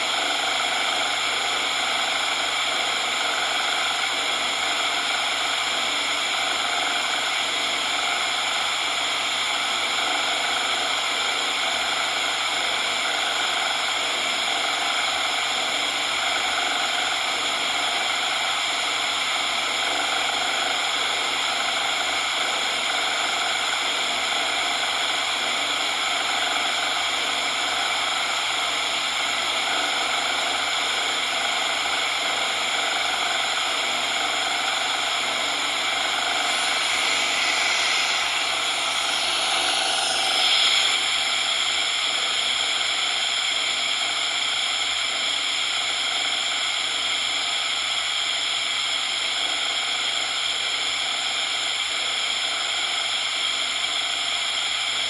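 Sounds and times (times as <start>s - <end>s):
synthetic noise hiss: 36.4s - 42.4s.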